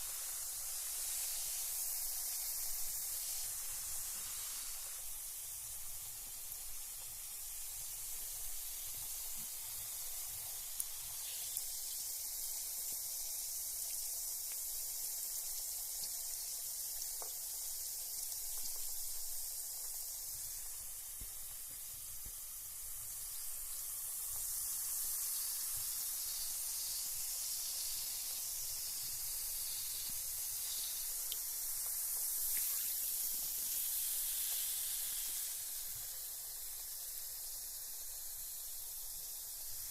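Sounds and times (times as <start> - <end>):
bath bomb fizzing in water: 0.0 - 39.9.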